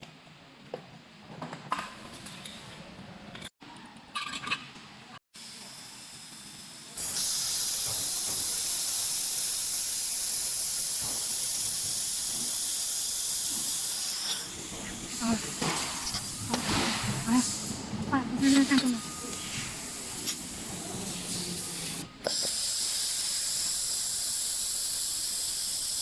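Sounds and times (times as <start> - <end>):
laser welding gun hissing: 5.4 - 17.8, 18.4 - 26.0.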